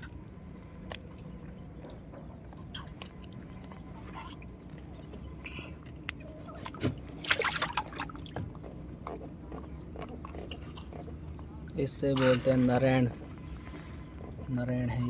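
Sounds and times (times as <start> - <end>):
water sloshing and dripping: 0.0 - 14.8
wet clicks: 0.2 - 7.3.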